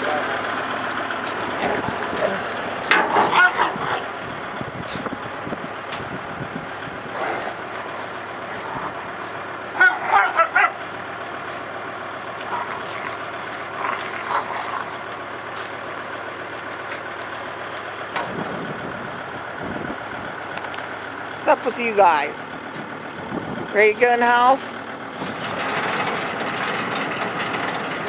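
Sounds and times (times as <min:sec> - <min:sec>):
tractor diesel engine idling: 0:00.0 - 0:28.0.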